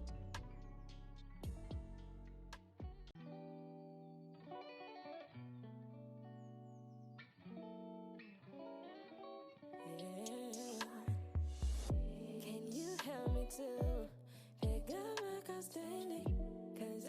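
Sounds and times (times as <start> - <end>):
plucked electric guitar: 0.0 - 11.3
drums: 1.4 - 2.1, 2.8 - 3.1, 10.6 - 12.2, 13.0 - 15.0, 16.3 - 16.5.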